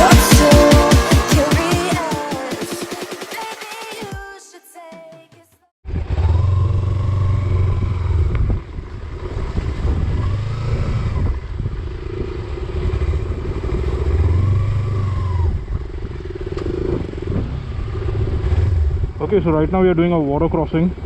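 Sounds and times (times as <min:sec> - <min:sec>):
motorcycle engine revving: 0:05.8 - 0:21.0.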